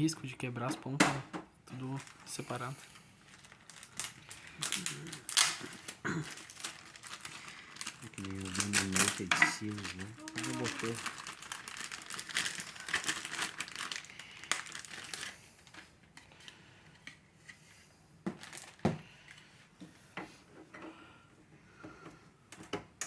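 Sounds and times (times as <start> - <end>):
plastic packaging crinkling: 1.7 - 17.2, 18.3 - 19.4.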